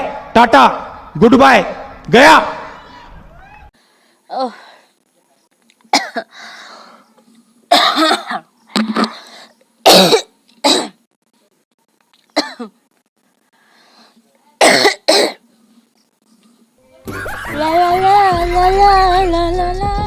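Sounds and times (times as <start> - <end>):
woman coughing: 6.0 - 6.3, 7.7 - 9.2, 9.9 - 11.0, 12.4 - 12.8, 14.6 - 15.4.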